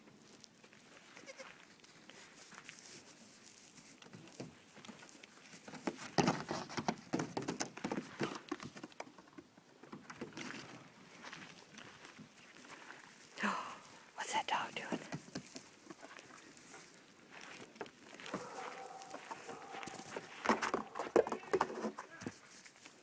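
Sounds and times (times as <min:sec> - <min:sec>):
baby goat bleating: 0:01.1 - 0:01.6
hooves clattering: 0:01.8 - 0:13.4, 0:15.0 - 0:23.0.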